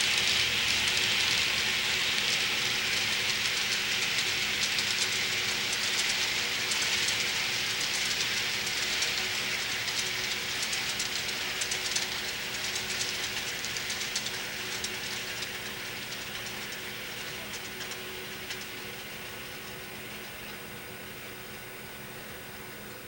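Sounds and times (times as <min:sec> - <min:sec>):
wheels clicking over rail joints: 0:00.0 - 0:20.8
metal wheels hissing on rails: 0:00.0 - 0:22.5
faint motor hum: 0:00.0 - 0:23.0.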